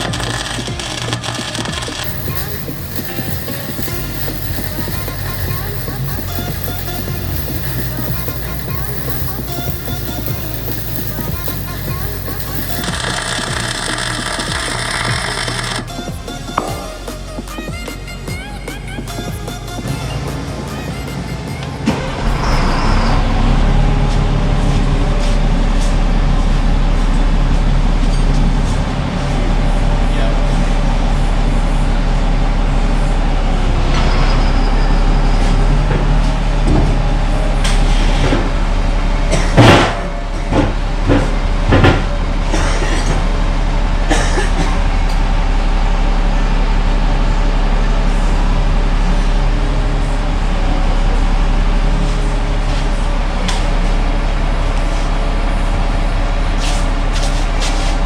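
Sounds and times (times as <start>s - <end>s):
engine running: 2.0s - 12.8s.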